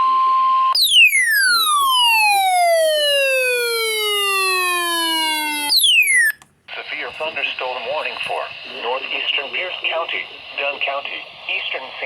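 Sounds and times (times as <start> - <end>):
buzzy electronic siren sliding down: 0.8 - 6.4.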